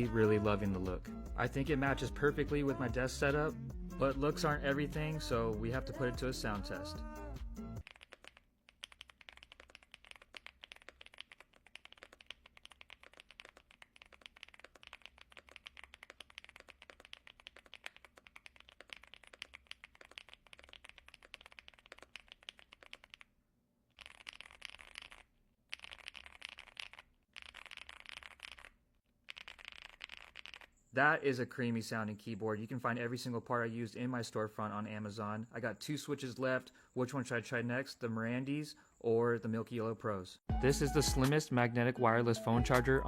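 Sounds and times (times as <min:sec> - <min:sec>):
mechanical keyboard typing: 0:07.8 - 0:23.2.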